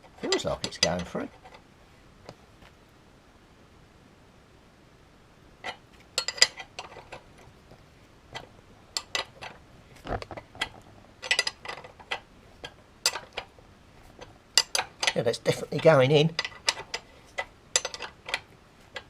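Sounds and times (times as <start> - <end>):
spanner clicking on metal bolt: 13.0 - 13.5, 14.6 - 19.0.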